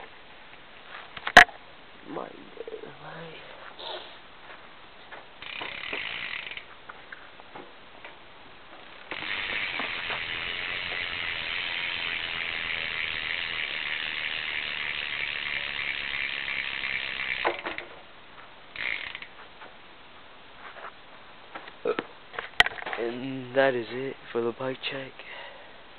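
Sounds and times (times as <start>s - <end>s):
bike hub ratcheting clicks: 5.4s - 6.7s, 9.0s - 17.9s, 18.8s - 19.3s.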